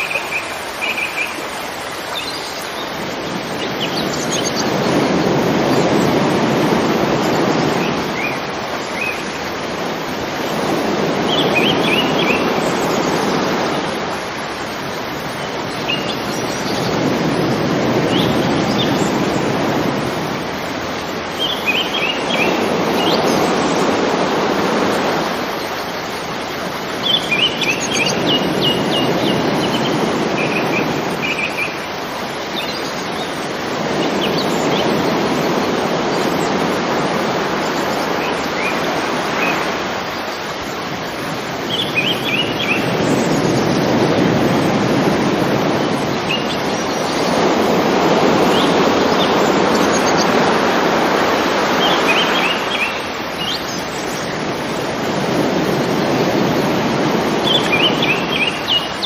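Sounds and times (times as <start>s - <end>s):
river water flowing: 0.0s - 59.0s
small birds chirping: 57.4s - 59.0s.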